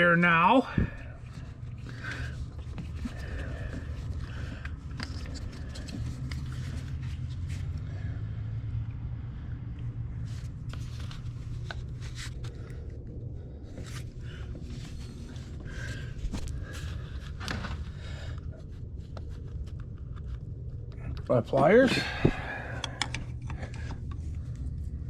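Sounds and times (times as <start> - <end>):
steady low rumble: 0.0 - 25.0
clicks and knocks of tools: 22.7 - 24.2.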